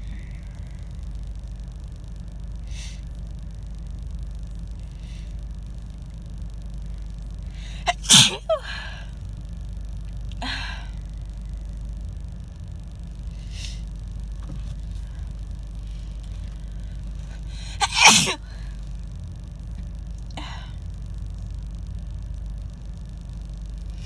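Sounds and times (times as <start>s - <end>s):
breaths: 4.9s - 5.4s, 7.5s - 9.2s, 10.4s - 11.1s, 14.9s - 18.9s, 20.4s - 20.8s
woman sneezing loudly: 7.7s - 8.8s, 17.6s - 18.5s.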